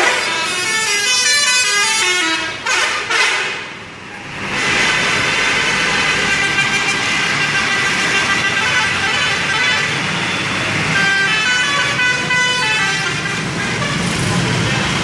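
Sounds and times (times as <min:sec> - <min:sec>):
multi-tone air horns melody: 0:00.0 - 0:03.7, 0:05.6 - 0:09.9.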